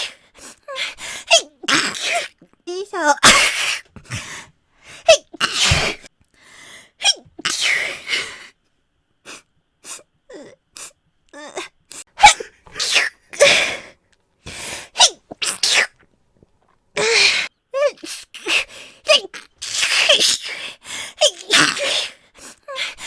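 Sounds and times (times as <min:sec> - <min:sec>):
woman sneezing: 0:03.1 - 0:03.8, 0:05.1 - 0:06.1, 0:12.2 - 0:13.8.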